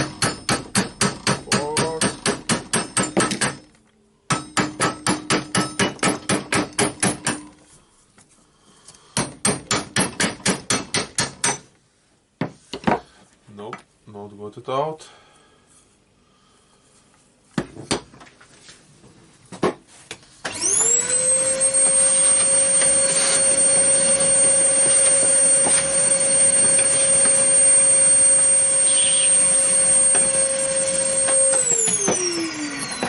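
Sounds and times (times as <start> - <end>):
electric motor whining: 20.5 - 33.0.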